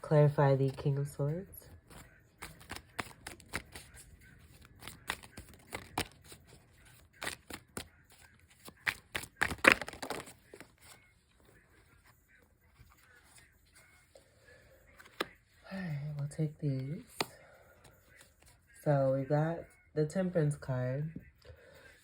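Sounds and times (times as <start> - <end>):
cards being shuffled: 1.7 - 11.1, 14.9 - 15.5, 16.8 - 18.6.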